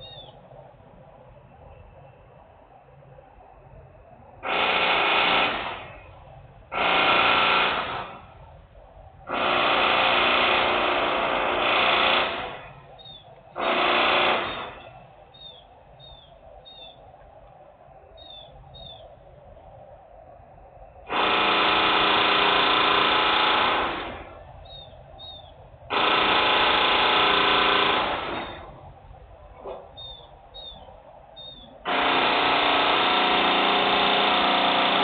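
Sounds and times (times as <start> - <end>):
faint bird chirps: 0.0 - 0.4, 13.0 - 13.4, 14.5 - 17.1, 18.1 - 19.7, 24.6 - 25.6, 29.9 - 31.8
loud industrial machine noise: 4.4 - 8.5, 9.2 - 15.5, 21.0 - 25.3, 25.9 - 30.7, 31.4 - 35.0.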